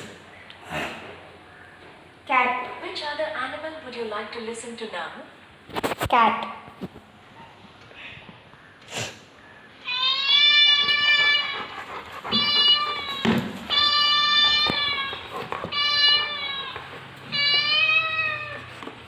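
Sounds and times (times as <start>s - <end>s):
cat meows from speaker: 17.3s - 18.7s.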